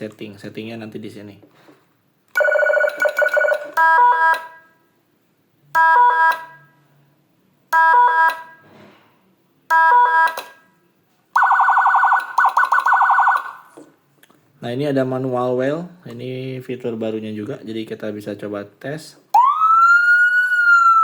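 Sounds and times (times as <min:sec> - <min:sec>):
electronic siren warble: 0:11.4 - 0:13.6, 0:19.4 - 0:21.0
stepped-pitch siren chirps: 0:11.4 - 0:13.8.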